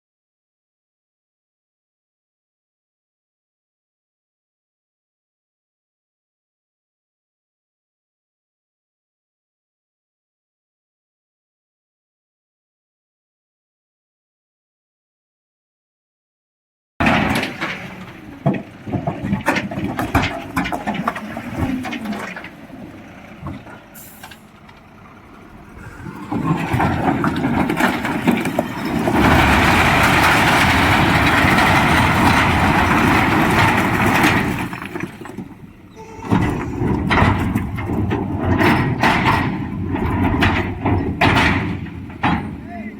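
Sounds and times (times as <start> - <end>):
metal knocks and clanks: 17.0 - 42.9
lorry engine running: 17.2 - 38.5
dense rumbling noise: 17.2 - 42.6.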